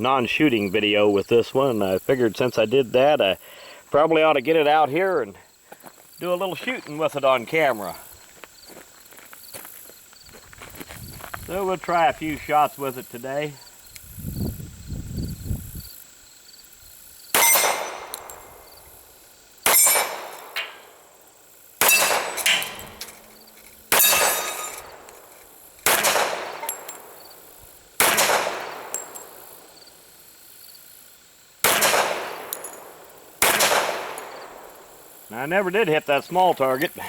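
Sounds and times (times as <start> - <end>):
pistol shots with ringing tail: 17.3 - 18.8, 19.6 - 21.1, 21.8 - 25.1, 25.8 - 29.8, 31.6 - 35.1.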